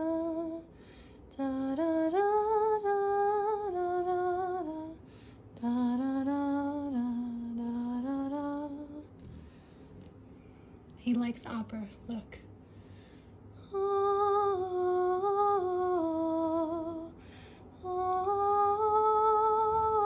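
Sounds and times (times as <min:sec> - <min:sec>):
woman humming: 0:17.8 - 0:20.0.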